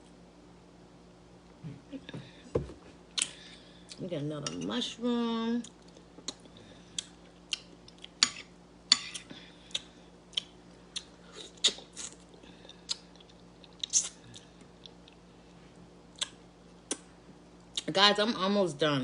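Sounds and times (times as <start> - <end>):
person chewing soft food: 5.6 - 15.3
wet mouth clicks and smacks: 16.2 - 17.0.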